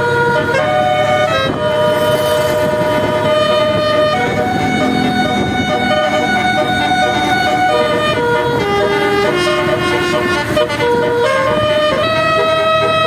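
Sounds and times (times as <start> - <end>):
multi-tone bus horn playing a tune: 0.0 - 13.0
low rumble: 1.6 - 9.2.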